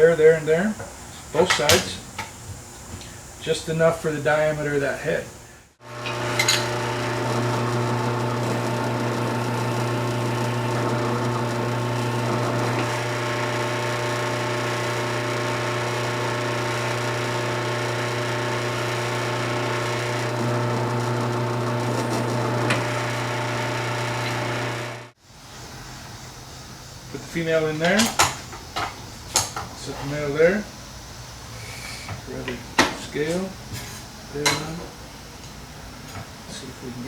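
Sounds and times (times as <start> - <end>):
drill press motor running: 5.8 - 25.2.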